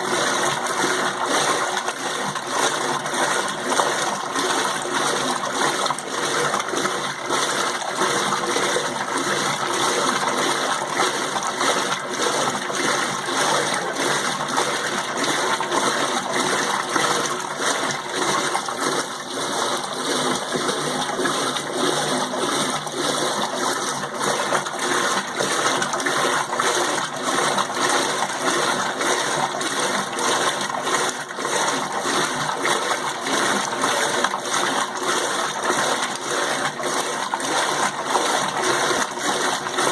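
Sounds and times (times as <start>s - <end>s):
water rushing in washing machine: 0.0s - 39.9s.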